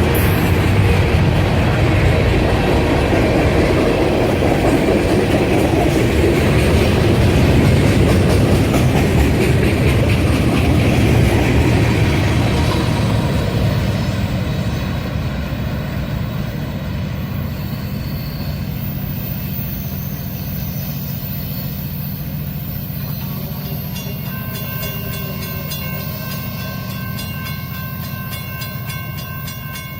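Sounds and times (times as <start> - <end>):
freight train cars rolling: 0.0 - 29.9.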